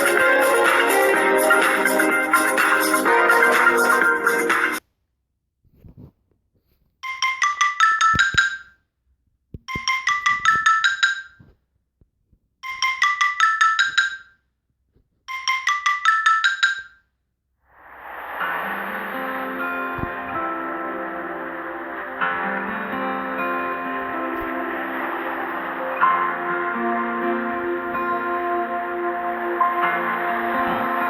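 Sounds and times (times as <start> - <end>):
marimba-like ringtone: 7.0 - 8.8, 9.7 - 11.5, 12.6 - 14.4, 15.3 - 17.0
steady tone: 17.7 - 31.0.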